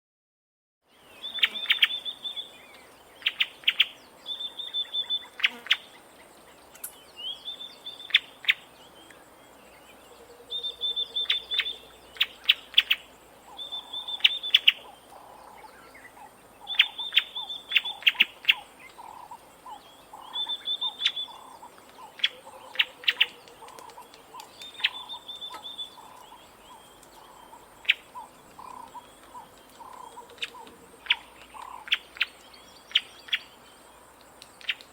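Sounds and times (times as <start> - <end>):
bird calling with snapping clicks: 2.6 - 4.0, 6.7 - 7.1, 8.0 - 9.2, 16.7 - 33.5, 34.1 - 34.9.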